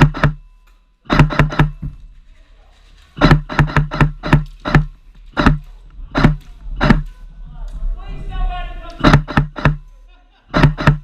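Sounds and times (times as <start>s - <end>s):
airsoft gun shots: 0.0s - 0.4s, 1.1s - 1.8s, 3.2s - 7.1s, 9.0s - 9.8s, 10.6s - 11.0s.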